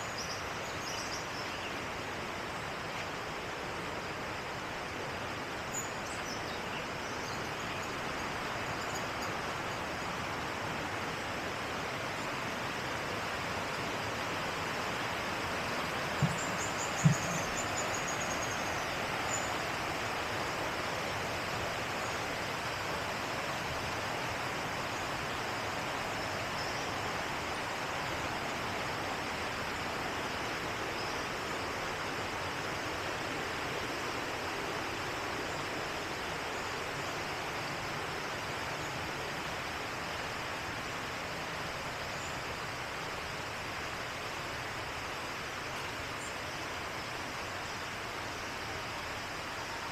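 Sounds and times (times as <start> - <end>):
river flowing: 0.0 - 49.9
short thumps: 16.2 - 17.4.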